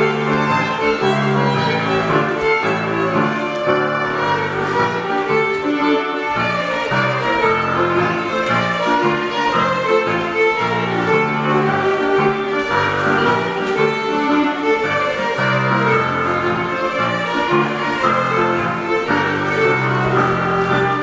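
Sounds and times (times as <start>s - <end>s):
fiddle melody: 0.0s - 21.0s.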